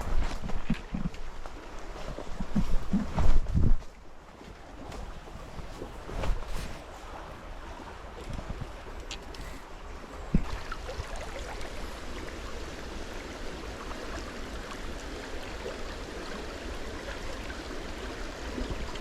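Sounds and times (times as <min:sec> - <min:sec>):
river water flowing: 0:03.9 - 0:19.0.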